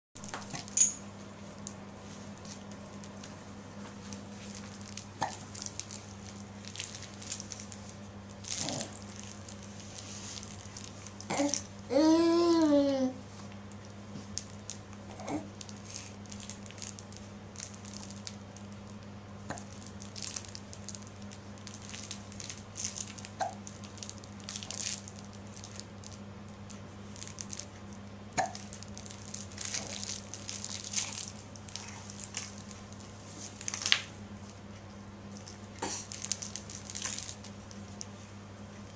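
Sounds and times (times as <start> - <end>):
low steady hum: 0.2 - 38.9
toy rubbed with crinkly rustles: 4.0 - 11.7, 15.6 - 18.4, 19.7 - 26.2, 28.6 - 33.9, 35.4 - 38.3.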